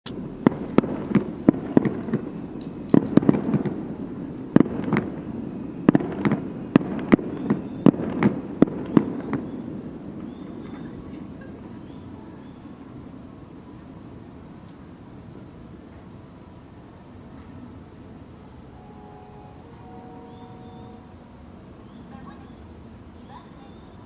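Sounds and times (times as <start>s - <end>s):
fireworks bangs: 0.1s - 12.9s.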